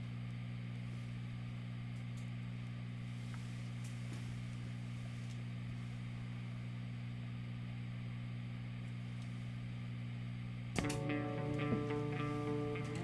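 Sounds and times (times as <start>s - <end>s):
sharp click: 10.8s - 11.2s
low hum: 10.8s - 13.0s.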